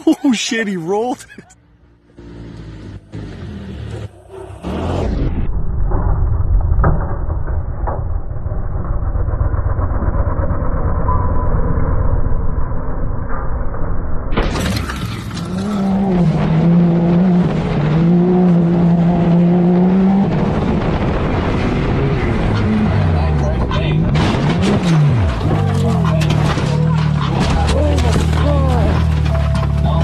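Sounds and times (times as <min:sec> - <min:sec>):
muffled vehicle rumble: 0:01.5 - 0:30.0
engine revving: 0:02.0 - 0:05.5, 0:15.2 - 0:30.0.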